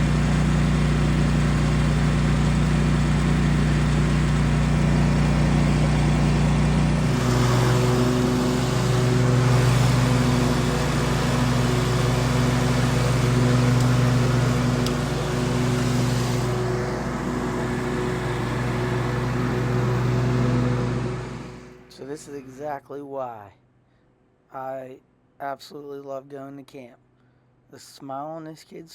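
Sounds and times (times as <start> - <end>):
lawn mower engine running: 0.0 - 21.9.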